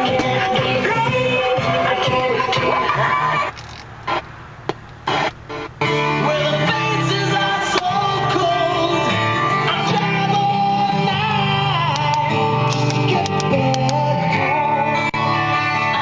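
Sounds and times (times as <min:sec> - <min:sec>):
music with singing and guitar: 0:00.0 - 0:04.2, 0:05.1 - 0:16.0
short clicks: 0:11.2 - 0:14.0.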